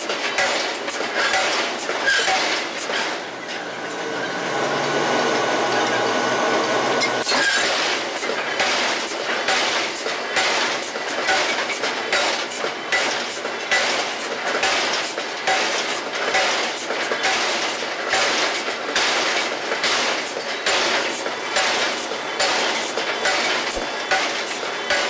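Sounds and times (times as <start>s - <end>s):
rhythmic metallic strikes: 0.0s - 2.9s, 7.6s - 25.0s
steady machine din: 7.7s - 25.0s.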